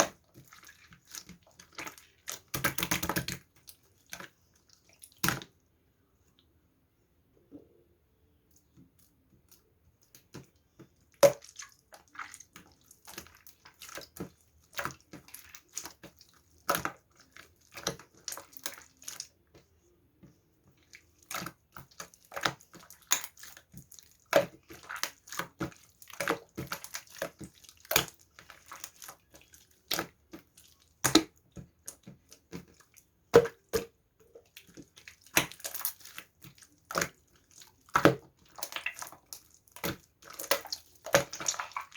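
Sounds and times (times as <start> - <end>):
wet clicks and crackles: 20.8 - 41.9.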